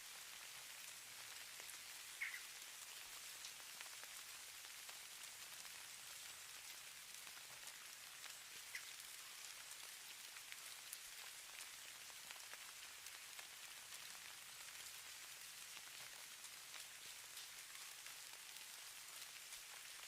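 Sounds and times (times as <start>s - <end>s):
snow falling with faint hiss: 0.0s - 20.0s.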